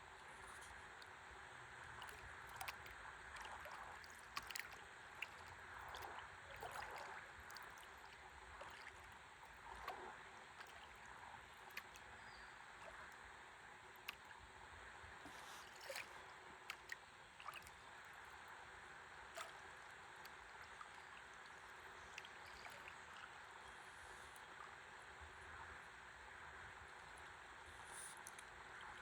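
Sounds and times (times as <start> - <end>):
river water lapping against a paddleboard: 1.8 - 25.0.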